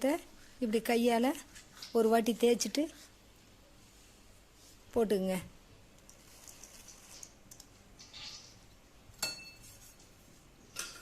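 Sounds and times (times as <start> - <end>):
kitchenware clink: 9.2 - 9.7, 10.7 - 11.0.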